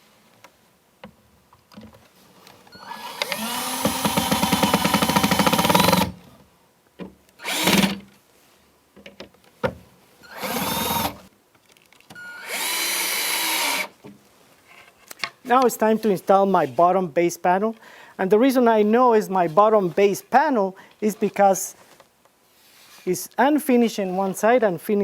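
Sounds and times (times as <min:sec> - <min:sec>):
power drill driving a screw: 0:02.8 - 0:06.2, 0:07.4 - 0:08.0, 0:10.3 - 0:11.2, 0:12.2 - 0:13.9.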